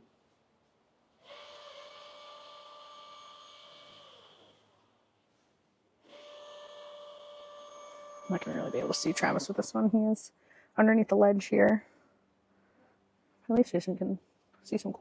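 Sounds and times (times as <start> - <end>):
distant chainsaw: 1.2 - 4.8, 6.0 - 9.6.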